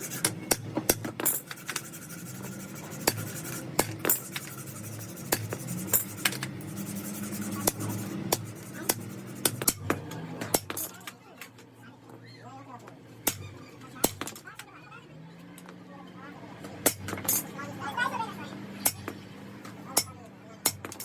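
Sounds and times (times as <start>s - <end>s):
metal parts and tools clinking: 16.8s - 17.6s, 20.6s - 21.0s.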